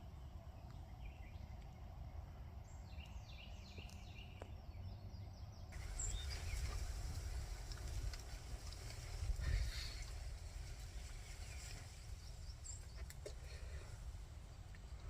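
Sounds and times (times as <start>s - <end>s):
bird chirping: 0.0s - 7.0s
background hiss: 5.7s - 15.0s.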